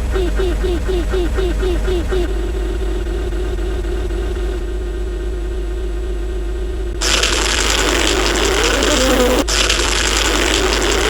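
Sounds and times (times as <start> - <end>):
deep rumble: 0.0 - 8.5
steady droning tone: 0.0 - 9.5
noisy rushing hiss: 7.0 - 11.0.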